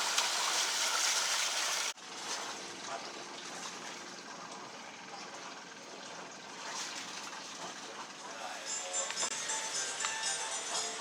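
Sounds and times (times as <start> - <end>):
rushing water: 0.0 - 4.0.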